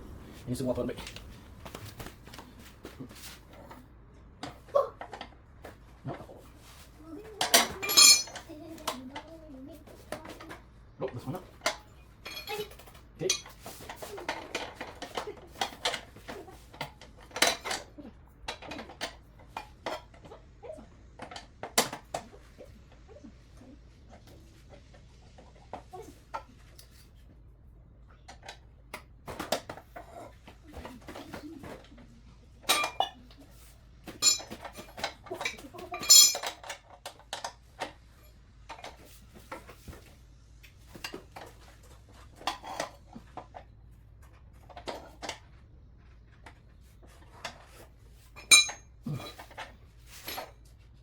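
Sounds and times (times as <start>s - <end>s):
metal tools clinking: 7.4s - 8.9s, 11.6s - 16.3s, 32.7s - 33.3s, 34.1s - 36.9s, 48.4s - 50.5s.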